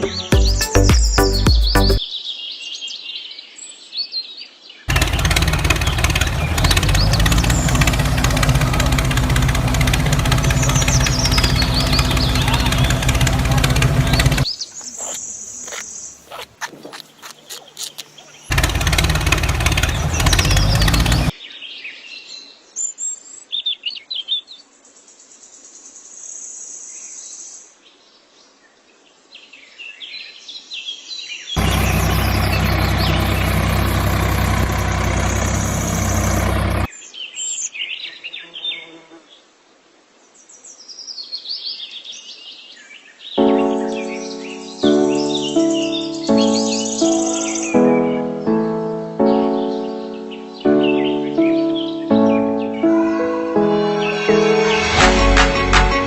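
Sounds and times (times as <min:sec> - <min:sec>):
birds chirping: 0:00.0 - 0:02.3, 0:04.9 - 0:21.4, 0:31.6 - 0:37.0, 0:43.4 - 0:54.8
loud steady noise with hum: 0:04.9 - 0:14.5, 0:31.6 - 0:36.9.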